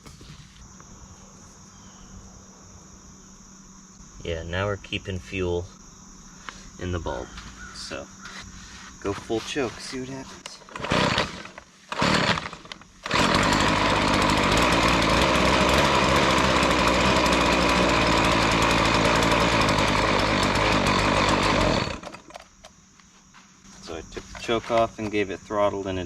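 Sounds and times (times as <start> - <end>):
starter cord pulls: 10.4 - 22.6
small two-stroke engine running: 10.7 - 22.4.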